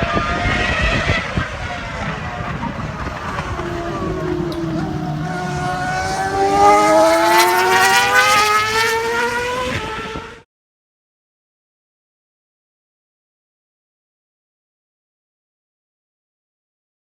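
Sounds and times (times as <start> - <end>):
racing car engine accelerating: 0.0 - 10.4.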